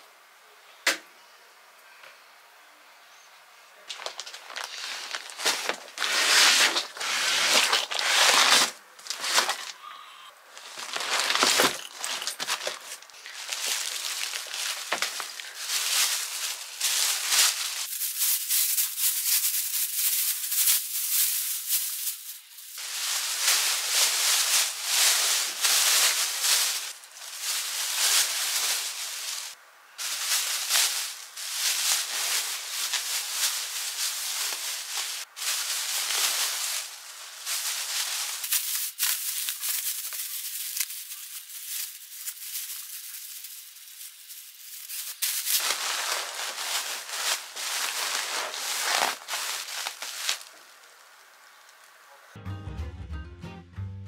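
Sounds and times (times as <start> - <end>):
plastic packaging crinkling: 3.9 - 9.9, 10.5 - 51.2.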